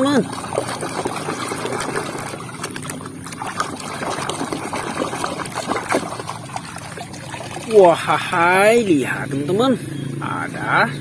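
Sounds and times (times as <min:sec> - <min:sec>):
water dripping: 0:00.0 - 0:08.0
water splashing in a basin: 0:00.0 - 0:08.7.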